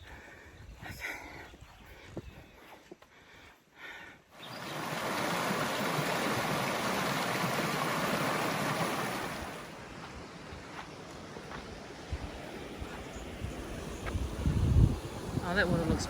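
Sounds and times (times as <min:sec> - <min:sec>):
river water rushing over rocks: 0:04.4 - 0:09.8.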